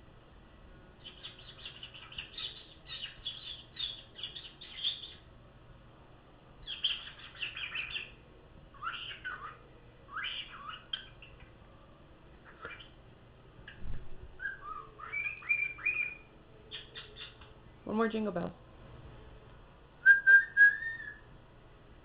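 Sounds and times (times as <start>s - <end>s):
cockatiel chirping and chattering: 1.0s - 5.2s, 6.6s - 11.5s, 12.4s - 12.9s, 14.4s - 17.5s.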